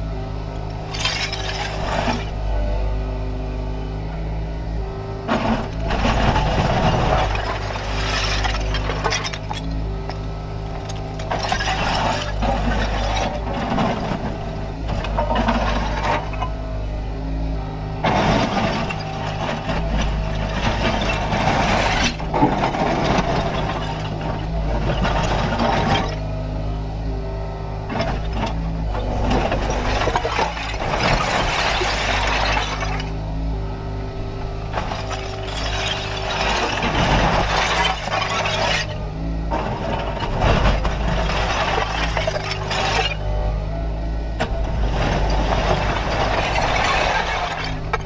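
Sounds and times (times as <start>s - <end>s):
excavator diesel engine running: 0.0s - 48.0s.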